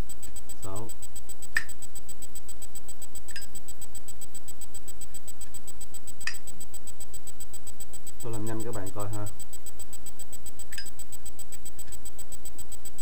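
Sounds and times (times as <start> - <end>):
steady background hum: 0.0 - 13.0.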